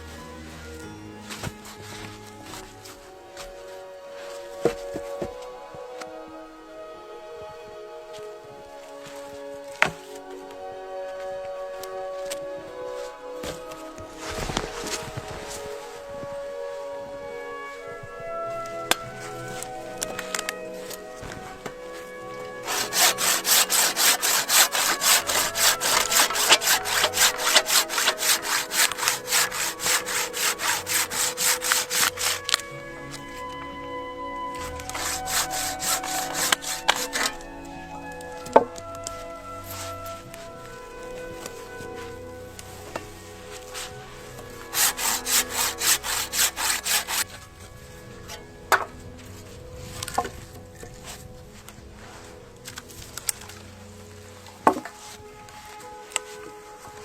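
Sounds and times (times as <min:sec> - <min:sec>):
hand saw cutting wood: 0:09.7 - 0:10.2, 0:22.3 - 0:33.2, 0:34.6 - 0:38.8, 0:43.5 - 0:47.5, 0:54.6 - 0:55.6.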